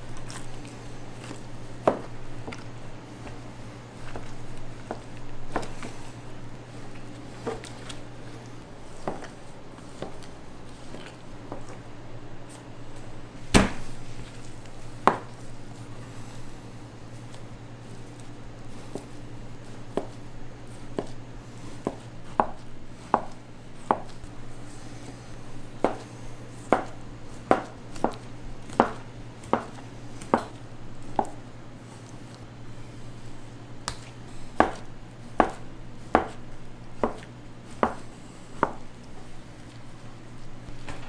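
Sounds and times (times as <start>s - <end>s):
knife chopping on cutting board: 1.8s - 2.1s, 13.5s - 13.9s, 21.8s - 24.2s, 25.8s - 31.4s, 34.6s - 36.4s, 37.0s - 38.8s.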